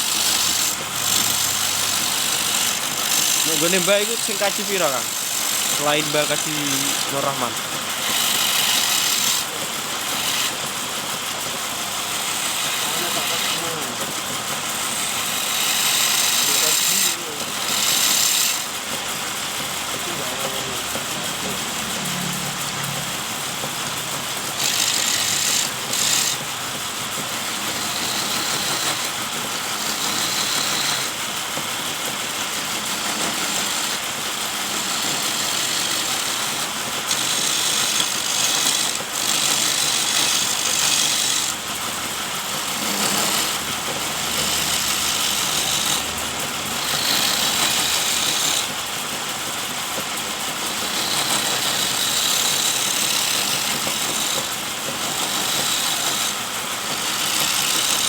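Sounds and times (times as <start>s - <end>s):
wood lathe motor running: 0.0s - 58.0s.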